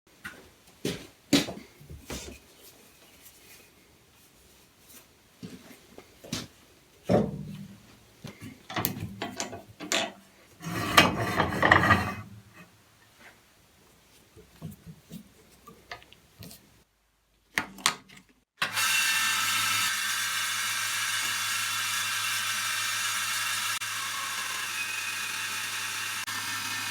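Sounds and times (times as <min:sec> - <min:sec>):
knocks and clicks of wood and tools: 0:07.1 - 0:10.2
power tool motor whirring: 0:18.6 - 0:26.9.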